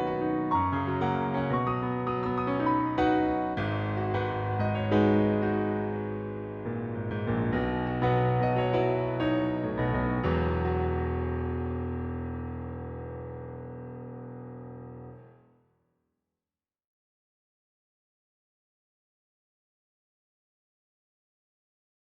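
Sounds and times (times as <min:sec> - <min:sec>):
piano chords: 0:00.0 - 0:15.4.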